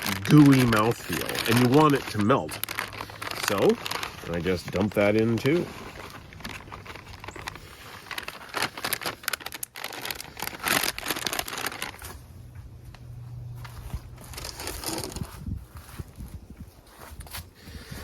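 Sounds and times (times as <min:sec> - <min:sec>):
food packaging crinkling: 0:00.0 - 0:16.3
steady low hum: 0:10.2 - 0:16.8.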